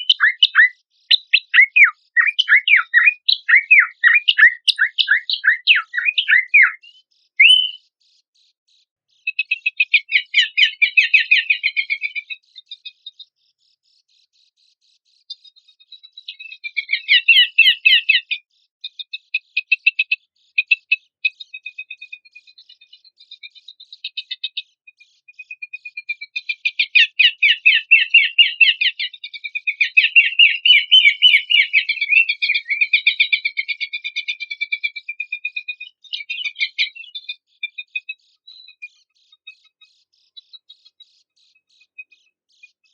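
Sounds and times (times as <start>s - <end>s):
babbler singing rapid trill: 0.0s - 7.8s
songbird whistling and trilling: 0.0s - 7.9s, 9.2s - 13.0s, 15.7s - 41.0s.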